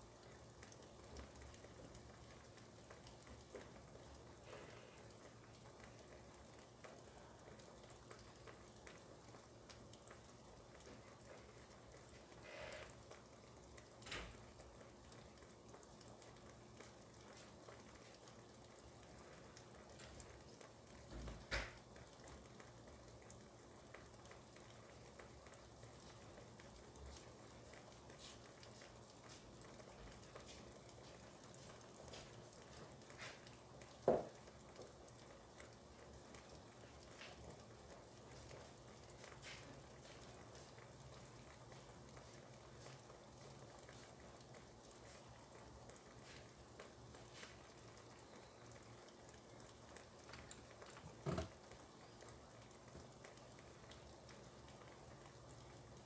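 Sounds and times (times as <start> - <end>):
rain patter: 0.0 - 56.0.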